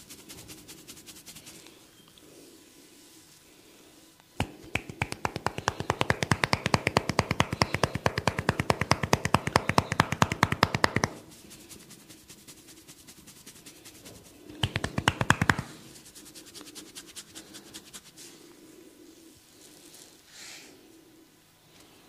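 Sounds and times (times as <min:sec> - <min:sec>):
percussive massage tapping: 0:04.4 - 0:11.2, 0:14.6 - 0:15.8.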